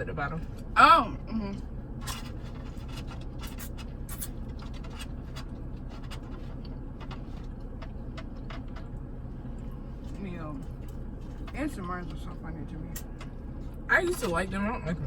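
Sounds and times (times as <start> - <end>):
steady low hum: 0.0 - 15.0
crunching and chewing: 1.9 - 12.3.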